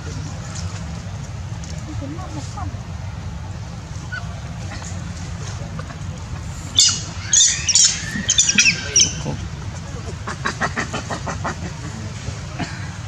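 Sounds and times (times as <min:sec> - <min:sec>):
monkey shrieking: 0:06.7 - 0:09.5.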